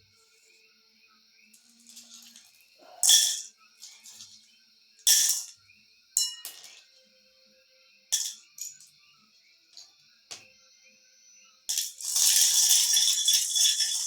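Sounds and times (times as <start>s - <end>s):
soft background music: 0.0s - 14.0s
shells clinking and clattering: 1.6s - 4.4s, 5.1s - 5.6s, 6.2s - 6.9s, 8.2s - 8.9s, 11.7s - 14.0s.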